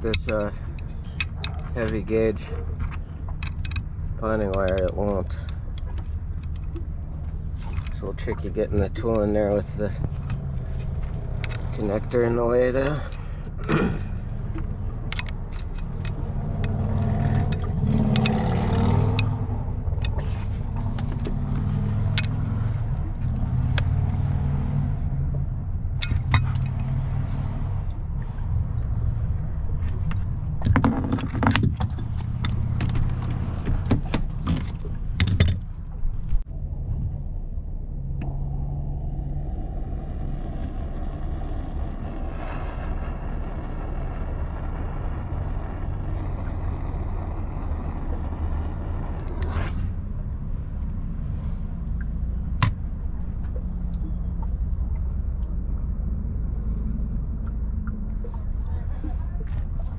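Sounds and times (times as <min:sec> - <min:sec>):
steady low hum: 0:27.4 - 0:59.9
thin high whine: 0:38.0 - 0:50.2.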